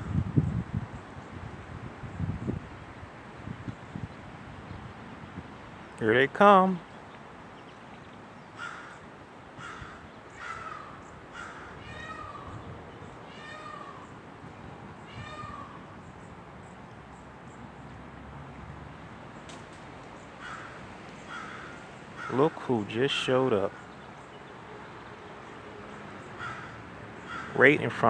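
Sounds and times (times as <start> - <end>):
peafowl calling: 8.6 - 12.6, 20.4 - 24.4, 26.3 - 28.0.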